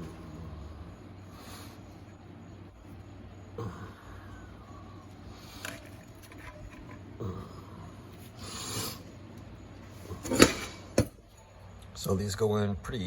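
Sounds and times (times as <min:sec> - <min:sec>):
rubbing and scraping of metal parts: 0:05.5 - 0:07.0, 0:10.0 - 0:10.8.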